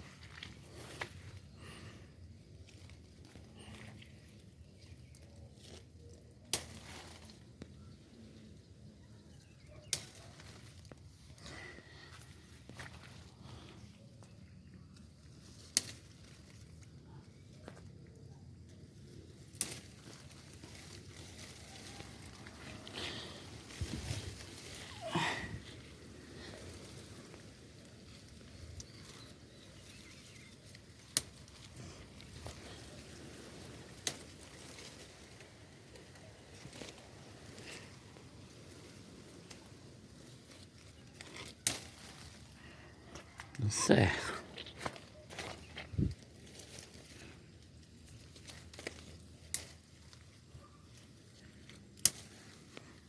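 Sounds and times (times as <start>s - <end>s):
footsteps rustling through undergrowth: 0.0s - 18.0s, 18.7s - 53.0s
twigs snapping: 2.6s - 7.8s, 9.8s - 12.1s, 14.9s - 17.0s, 19.3s - 43.6s, 44.5s - 53.0s.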